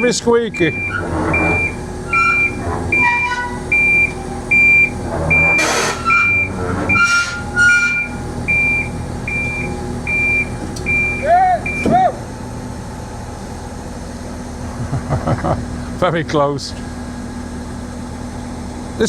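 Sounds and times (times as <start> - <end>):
warning alarm beeping: 0.0 - 12.0
steel tracks squealing on concrete: 0.6 - 9.7.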